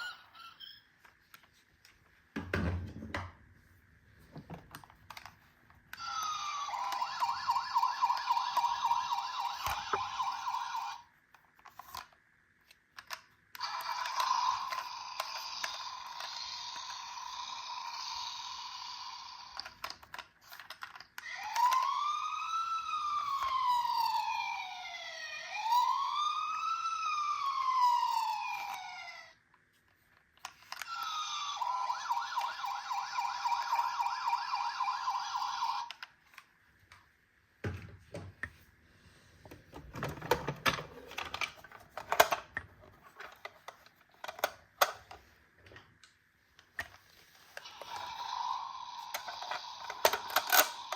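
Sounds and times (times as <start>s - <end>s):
toy electronic siren: 0.0s - 1.1s, 5.9s - 12.2s, 13.5s - 29.5s, 30.4s - 36.2s, 47.6s - 50.9s.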